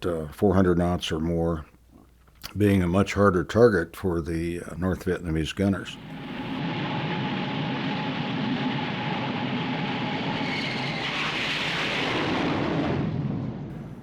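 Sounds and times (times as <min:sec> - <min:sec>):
jet aircraft engine noise: 0:06.0 - 0:14.0.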